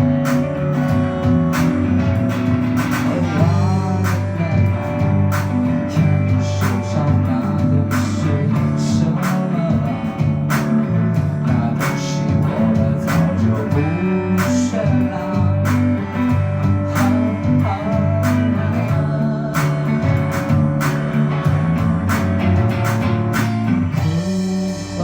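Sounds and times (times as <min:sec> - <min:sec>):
drum hits: 0:00.0 - 0:24.6
rock band playing live: 0:00.0 - 0:25.0.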